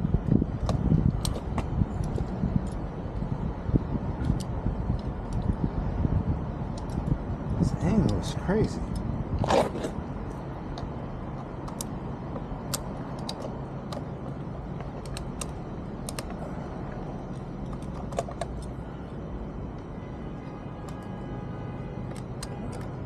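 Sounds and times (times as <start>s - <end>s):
screwdriver clicking: 12.6s - 14.1s, 14.8s - 16.4s.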